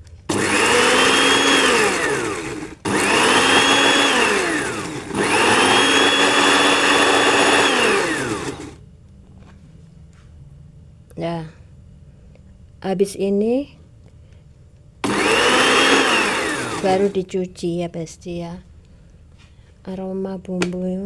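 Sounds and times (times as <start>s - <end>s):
blender motor running: 0.3s - 8.8s, 15.0s - 17.2s.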